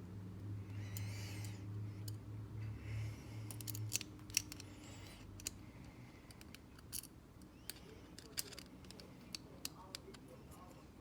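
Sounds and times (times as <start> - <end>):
metallic lock and key clicks: 3.5 - 4.7.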